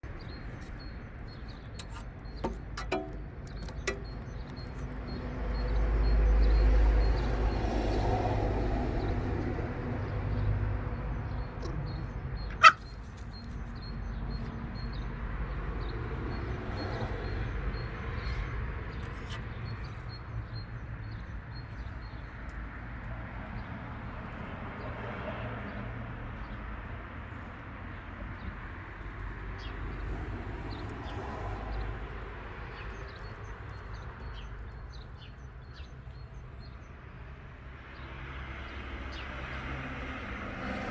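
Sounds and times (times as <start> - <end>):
background traffic noise: 0.0 - 40.9
vehicle passing: 5.2 - 13.0.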